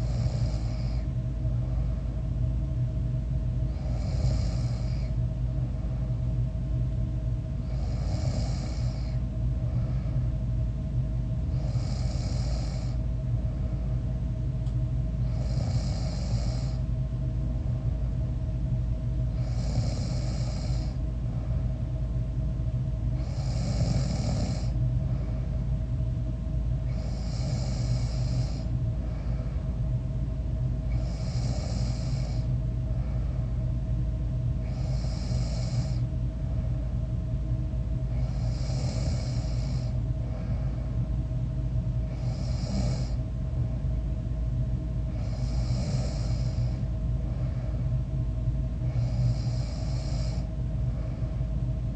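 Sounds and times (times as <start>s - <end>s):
person snoring: 0.0s - 1.1s, 3.7s - 5.1s, 7.6s - 9.2s, 11.5s - 13.0s, 15.2s - 16.8s, 19.4s - 21.0s, 23.2s - 24.8s, 26.8s - 28.7s, 30.9s - 32.5s, 34.6s - 36.1s, 38.1s - 40.6s, 42.1s - 43.2s, 45.1s - 46.8s, 48.8s - 50.5s
steady low hum: 0.0s - 51.9s.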